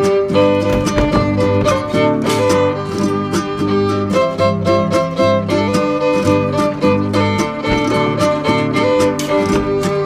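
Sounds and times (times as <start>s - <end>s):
instrumental music with strings and beat: 0.0s - 10.0s.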